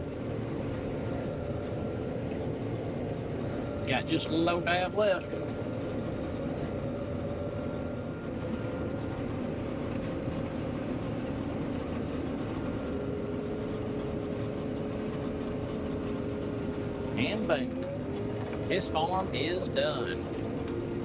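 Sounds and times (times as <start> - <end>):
combine harvester drone: 0.0 - 21.0
faint machine whine: 0.0 - 21.0.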